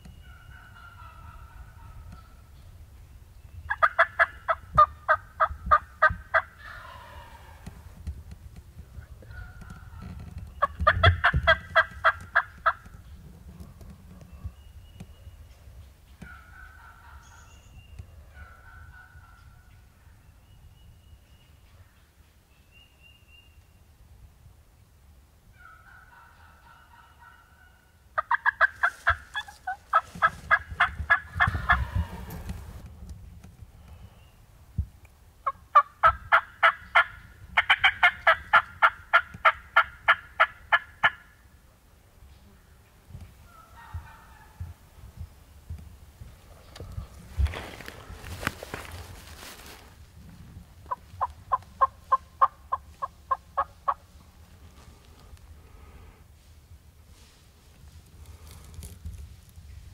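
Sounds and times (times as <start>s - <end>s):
turkey calling: 0.1s - 2.5s, 3.7s - 7.7s, 9.2s - 12.9s, 25.5s - 32.4s, 35.4s - 41.4s, 50.9s - 54.3s.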